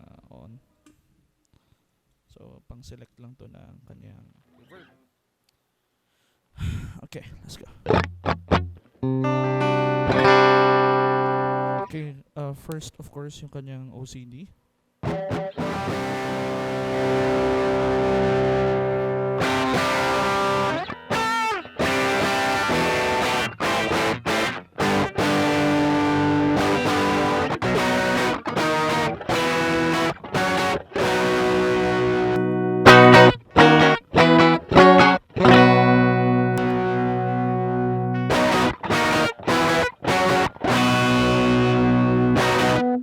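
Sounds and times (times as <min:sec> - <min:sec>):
distorted electric guitar: 0:07.9 - 0:11.9, 0:15.0 - 0:43.0.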